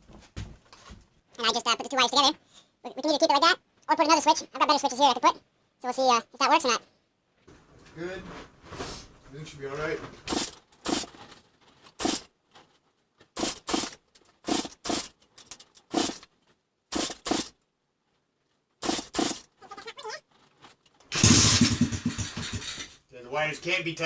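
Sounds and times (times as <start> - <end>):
dirt bike engine sputtering: 21.1 - 22.9.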